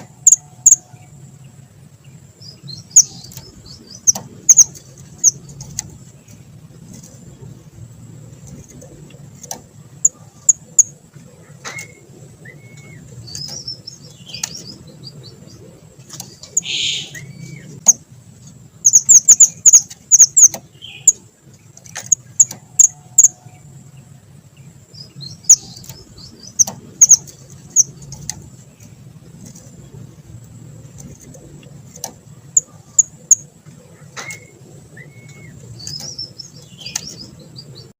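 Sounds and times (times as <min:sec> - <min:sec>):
songbird high sharp chirps: 0:00.0 - 0:07.5, 0:11.6 - 0:18.1, 0:18.7 - 0:30.1, 0:30.9 - 0:37.9
scattered clicks: 0:13.2 - 0:14.8.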